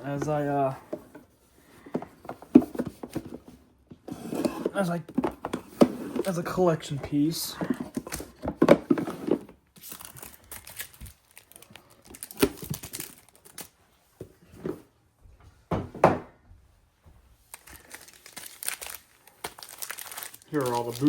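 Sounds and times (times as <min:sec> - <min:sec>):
packaging crinkling and rustling: 0:07.1 - 0:13.8, 0:17.4 - 0:21.0.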